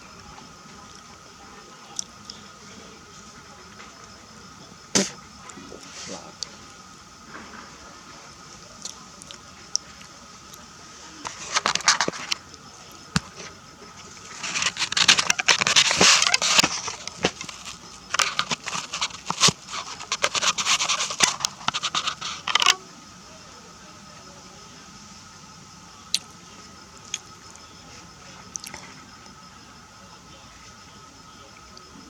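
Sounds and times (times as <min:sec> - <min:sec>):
crackling scraping rustles: 0:04.9 - 0:09.1, 0:09.9 - 0:22.9.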